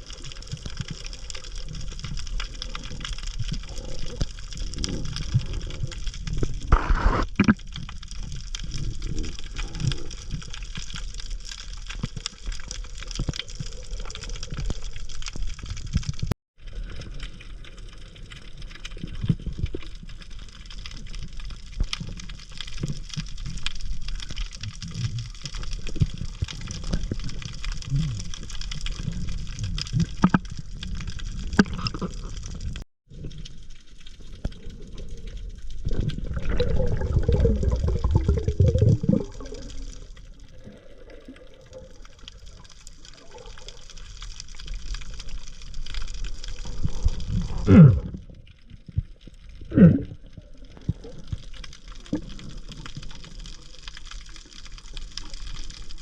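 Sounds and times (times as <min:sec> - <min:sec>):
small underwater clicks: 0:00.0 - 0:56.0
underwater water noise: 0:00.0 - 0:56.0
water rushing: 0:36.1 - 0:43.6.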